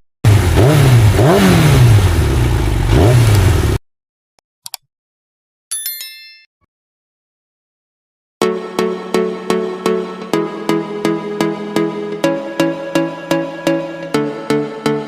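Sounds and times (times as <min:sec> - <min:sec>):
engine revving: 0:00.2 - 0:03.8.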